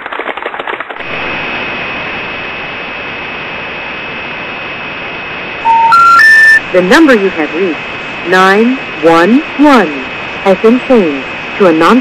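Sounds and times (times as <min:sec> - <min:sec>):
static hiss: 0:01.0 - 0:12.0
faint high steady tone: 0:05.6 - 0:12.0.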